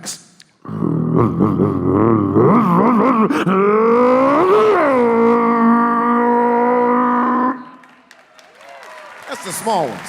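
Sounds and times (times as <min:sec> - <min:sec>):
man imitating motorcycle engine: 0:00.6 - 0:07.7.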